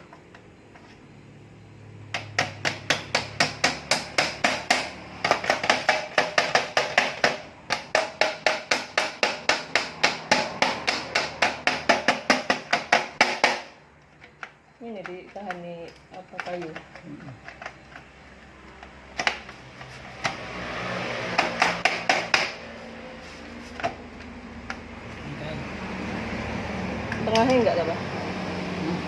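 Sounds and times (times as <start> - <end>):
hammer striking rapidly: 2.2 - 13.7, 21.3 - 22.7.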